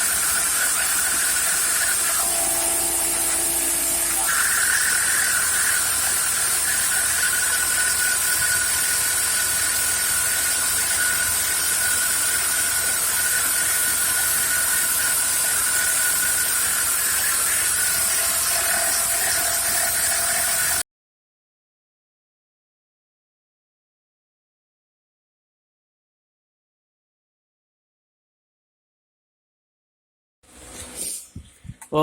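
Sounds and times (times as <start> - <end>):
metal cutting hiss: 0.0 - 20.8
router spindle whine: 0.0 - 20.8.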